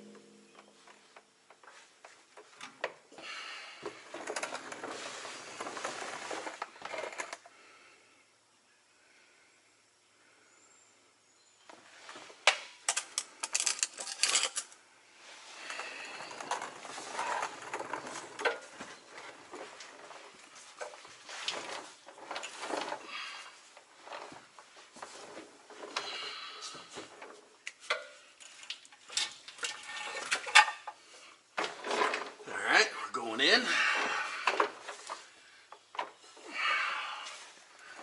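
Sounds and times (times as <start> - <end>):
metal clanking and scraping: 27.9 - 31.0.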